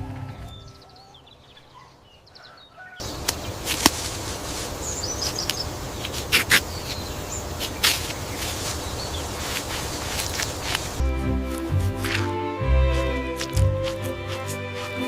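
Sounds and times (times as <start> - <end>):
birds chirping: 0.0 - 15.0
steady rushing noise: 3.0 - 15.0.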